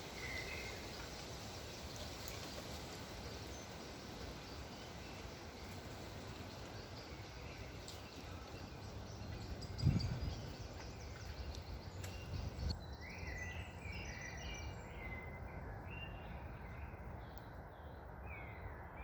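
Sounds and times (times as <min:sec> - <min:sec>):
wind rumble: 0:00.0 - 0:13.0
songbirds chirping: 0:00.0 - 0:19.0.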